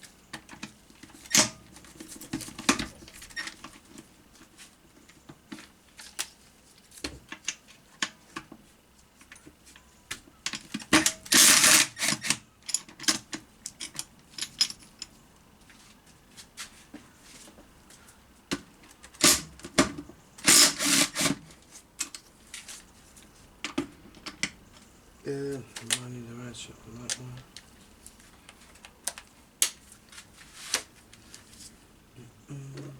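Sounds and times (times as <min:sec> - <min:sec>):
metal parts clinking and clattering: 0:11.3 - 0:15.2.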